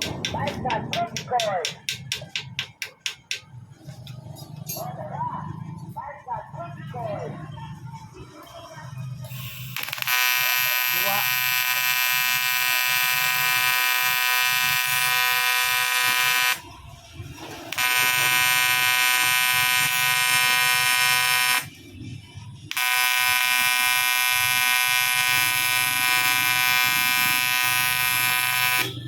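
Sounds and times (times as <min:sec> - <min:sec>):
welding arc buzzing: 0:09.3 - 0:16.6, 0:17.7 - 0:21.8, 0:22.7 - 0:29.0.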